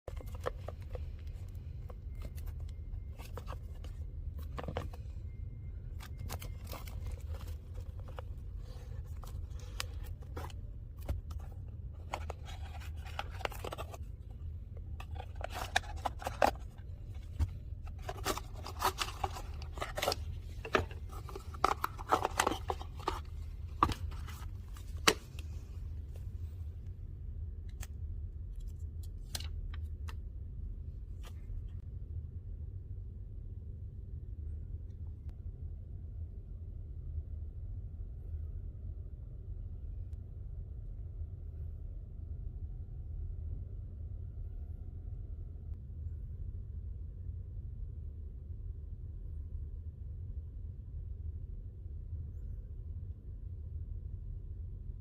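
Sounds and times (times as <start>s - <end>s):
packaging being handled: 0.1s - 5.0s, 6.0s - 14.1s, 14.9s - 25.5s
steady low hum: 0.1s - 55.0s.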